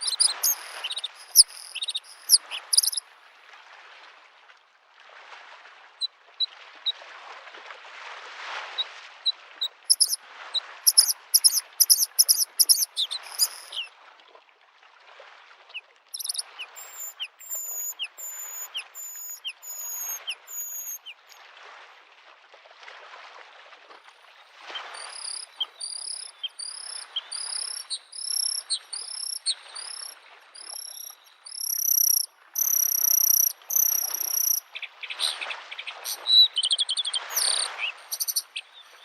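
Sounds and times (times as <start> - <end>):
bird singing: 0.0 - 3.0, 9.9 - 10.2, 10.9 - 13.9, 16.2 - 21.4, 24.7 - 39.0
small waves lapping at shore: 0.0 - 39.0.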